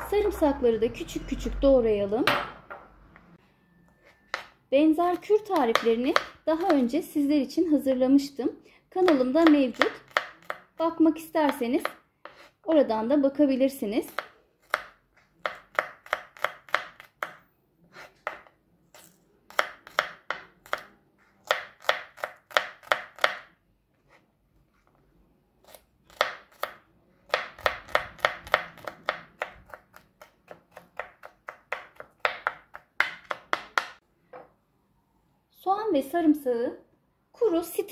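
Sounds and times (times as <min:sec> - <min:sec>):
knife chopping on cutting board: 0:05.5 - 0:06.9, 0:09.1 - 0:10.7, 0:14.1 - 0:18.5, 0:19.5 - 0:23.5, 0:25.7 - 0:34.0.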